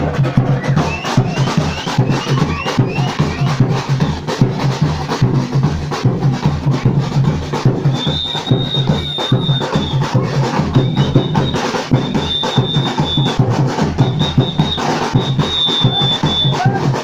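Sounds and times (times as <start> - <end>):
samba drum ensemble: 0.0 - 17.0
high steady tone: 8.0 - 13.4.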